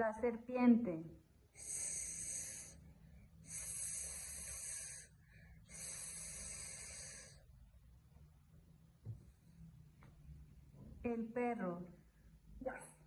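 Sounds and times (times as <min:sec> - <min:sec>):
woman hissing like a snake: 0:01.6 - 0:02.8, 0:03.4 - 0:07.4.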